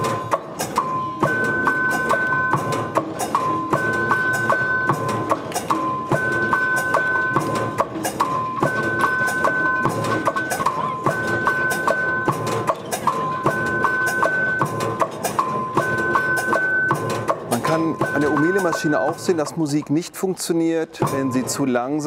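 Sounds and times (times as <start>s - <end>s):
wood-block-like knocks: 0.0s - 19.4s
ringing tones: 0.0s - 20.1s, 21.0s - 22.0s.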